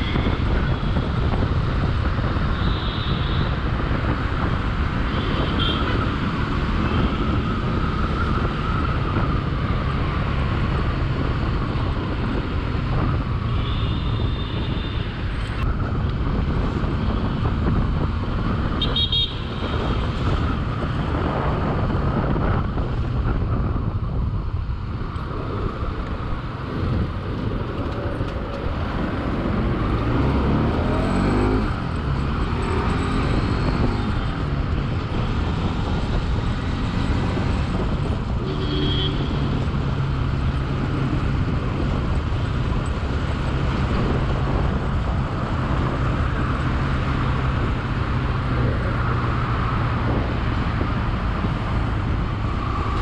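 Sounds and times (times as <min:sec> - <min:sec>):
road traffic: 0:00.0 - 0:53.0
vehicle horn beeps: 0:38.4 - 0:39.4.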